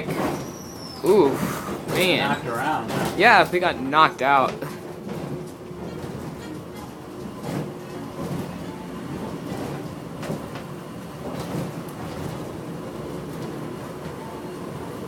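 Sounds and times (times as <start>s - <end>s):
train car running rumble: 0.0s - 15.0s
knocks and rattles: 1.8s - 3.6s.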